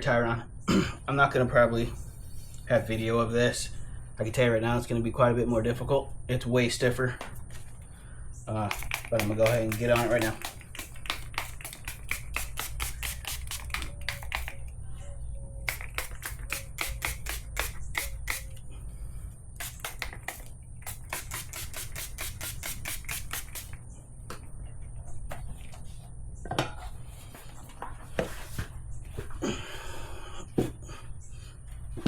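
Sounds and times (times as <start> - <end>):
rapid even clicking: 8.6 - 14.6.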